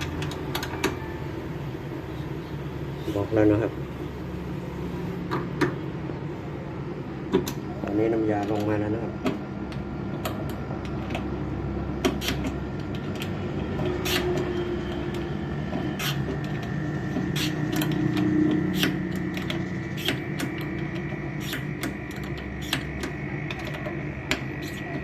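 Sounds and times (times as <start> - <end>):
air conditioner humming: 0.0 - 25.0.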